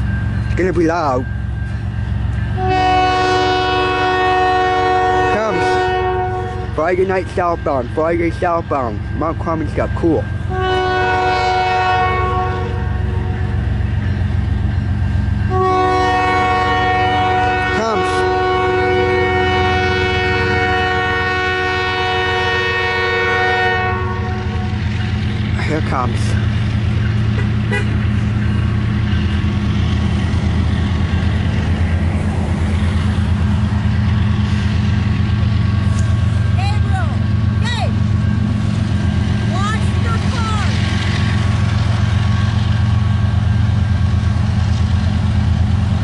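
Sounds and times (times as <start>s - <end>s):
diesel locomotive engine drone: 0.0s - 46.0s
train rumbling past: 0.0s - 46.0s
locomotive horn blasts: 2.6s - 7.2s, 10.4s - 13.6s, 15.4s - 24.9s, 27.3s - 28.2s.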